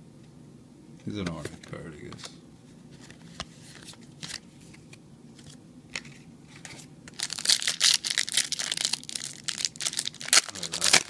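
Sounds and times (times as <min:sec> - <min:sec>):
cards being handled: 0:03.0 - 0:09.0, 0:09.8 - 0:11.0
foil wrapper crinkling and tearing: 0:07.1 - 0:11.0.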